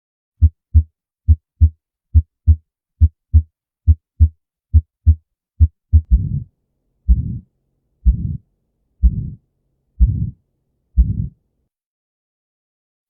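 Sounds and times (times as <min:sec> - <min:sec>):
heartbeat lub-dub: 0:00.4 - 0:06.5, 0:07.1 - 0:07.4, 0:08.0 - 0:08.4, 0:09.0 - 0:09.4, 0:10.0 - 0:10.4, 0:11.0 - 0:11.4.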